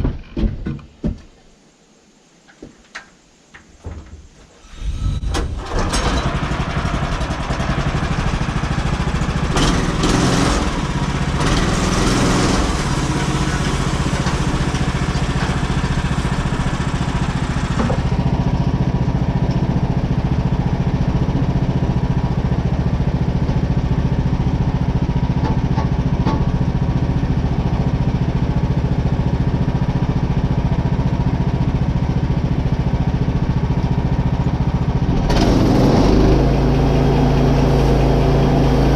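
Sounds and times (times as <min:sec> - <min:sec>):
high hiss: 0:01.4 - 0:05.9
gas engine running: 0:04.6 - 0:38.9.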